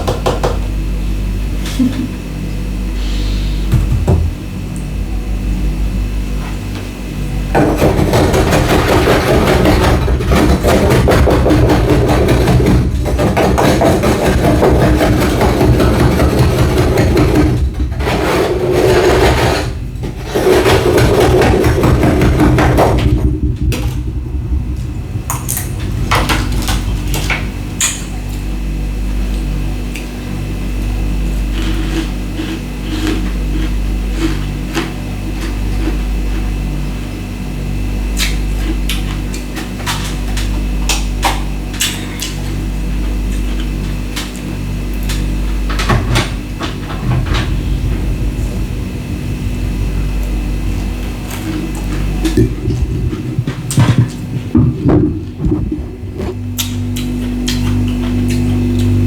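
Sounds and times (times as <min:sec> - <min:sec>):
steady low hum: 0:00.0 - 0:59.0
ice crunching in teeth: 0:31.4 - 0:36.5.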